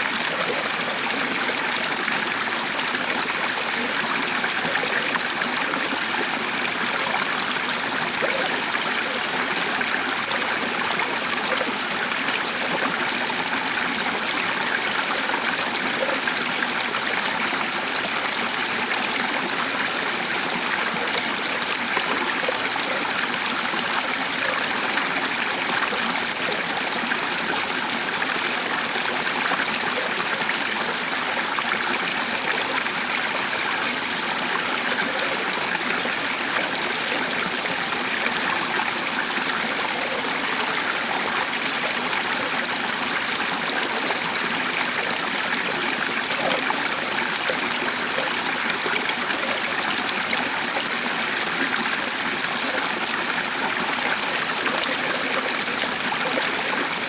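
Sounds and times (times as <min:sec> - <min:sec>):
stream water trickling: 0:00.0 - 0:57.0.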